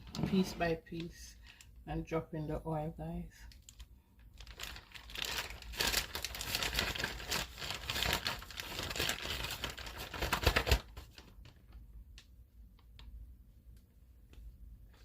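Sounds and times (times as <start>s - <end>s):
plastic bag crinkling: 3.4s - 12.2s.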